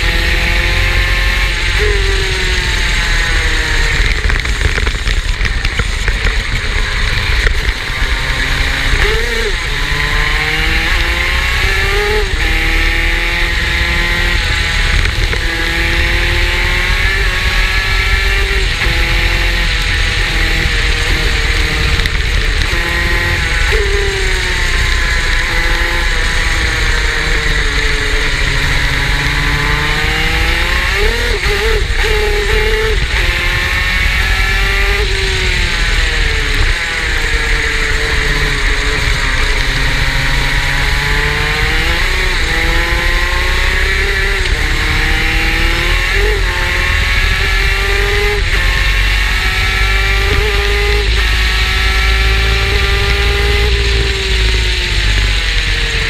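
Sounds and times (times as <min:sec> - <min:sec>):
kart engine revving: 0:00.0 - 0:56.0.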